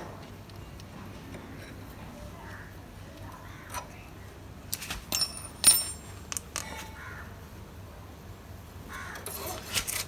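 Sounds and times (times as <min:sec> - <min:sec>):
metal tools clinking and knocking: 0:04.7 - 0:06.9.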